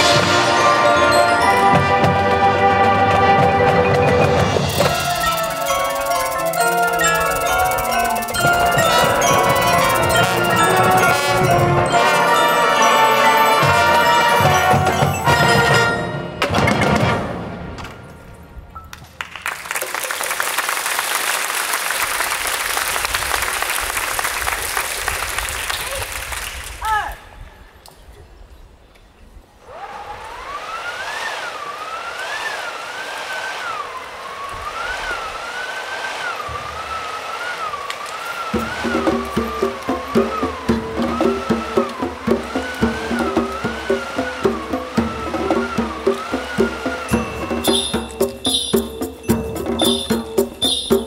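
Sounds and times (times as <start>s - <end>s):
glockenspiel and bells ringing: 0.0s - 16.4s, 46.9s - 51.0s
marching band playing: 0.0s - 18.1s, 32.0s - 51.0s
sustained wavering whistle tone: 3.9s - 13.6s, 30.3s - 41.8s, 46.4s - 51.0s.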